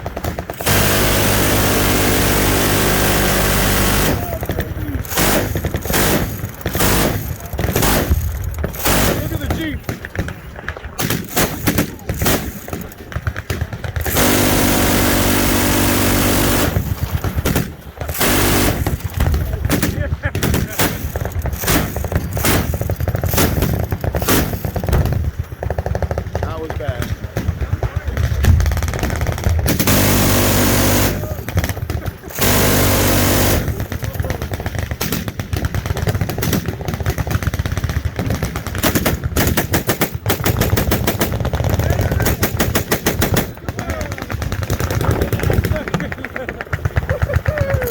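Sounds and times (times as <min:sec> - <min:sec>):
machine gun firing: 0:00.0 - 0:47.9.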